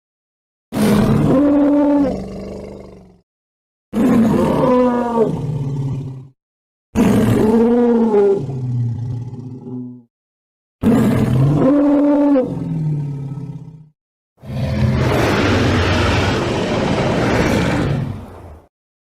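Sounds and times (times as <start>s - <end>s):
dinosaur roar: 0.7s - 3.2s, 4.0s - 6.3s, 7.0s - 10.1s, 10.8s - 18.6s
low growl: 7.0s - 10.1s, 10.8s - 18.4s.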